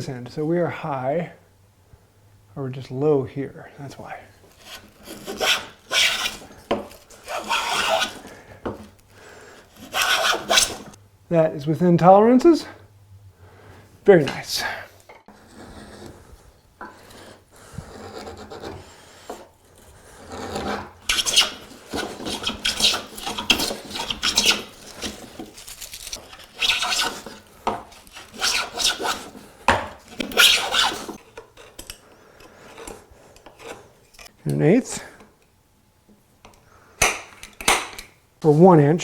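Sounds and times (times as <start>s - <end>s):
hand tool rasping on wood: 4.6s - 8.9s, 9.7s - 11.0s, 15.3s - 31.2s.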